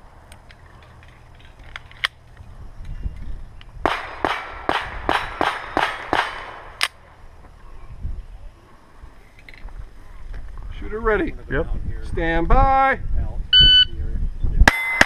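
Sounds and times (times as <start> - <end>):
pistol shots: 3.8 - 7.1.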